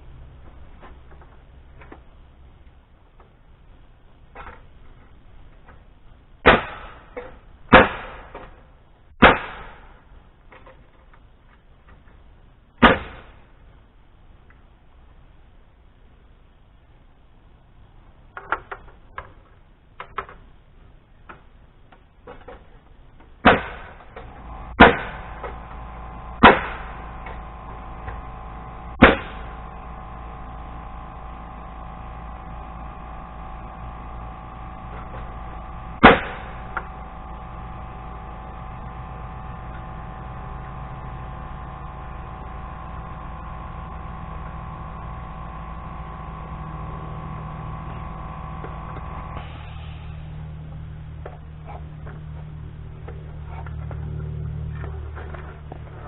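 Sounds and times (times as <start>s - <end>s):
nail gun shots: 6.4s - 8.6s, 9.2s - 10.0s, 12.8s - 13.4s, 23.4s - 25.6s, 26.4s - 27.4s, 29.0s - 29.6s, 36.0s - 37.0s
steady motor hum: 23.5s - 56.0s.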